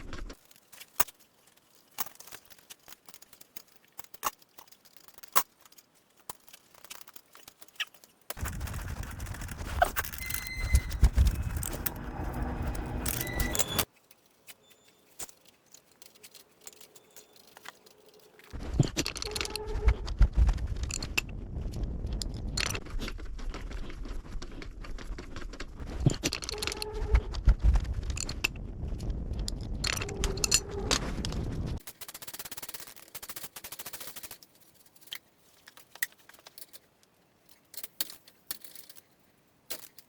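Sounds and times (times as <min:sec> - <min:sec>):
metal tools clinking and scraping: 0:09.8 - 0:19.6.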